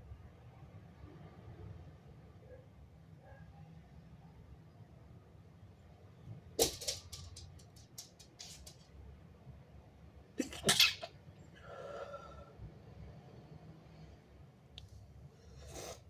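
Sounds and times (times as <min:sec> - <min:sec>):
person sneezing wetly: 0:10.4 - 0:11.1.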